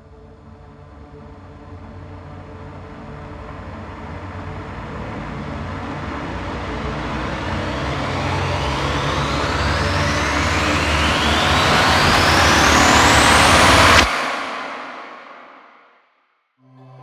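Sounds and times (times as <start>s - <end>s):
low humming drone: 0.0s - 14.1s.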